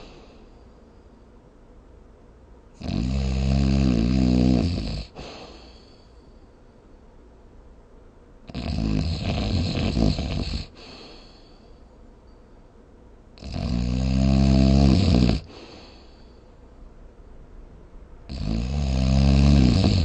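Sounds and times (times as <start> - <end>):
person snoring: 2.8 - 5.9, 8.5 - 11.5, 13.4 - 16.2, 18.3 - 20.0.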